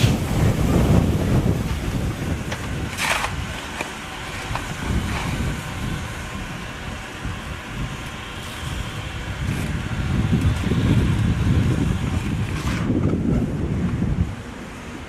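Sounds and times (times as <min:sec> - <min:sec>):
steam hiss: 0:00.0 - 0:02.8
steam locomotive rumble: 0:00.0 - 0:15.0.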